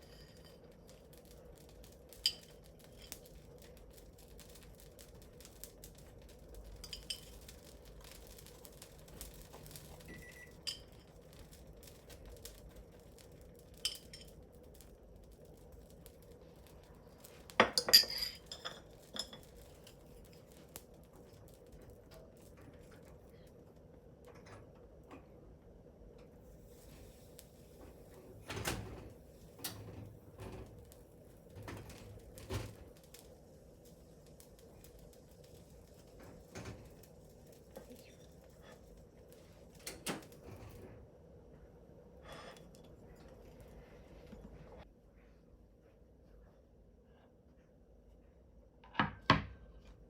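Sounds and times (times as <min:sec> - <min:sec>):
tableware clattering: 0:17.6 - 0:19.4
dishes and cutlery clinking: 0:17.6 - 0:19.5.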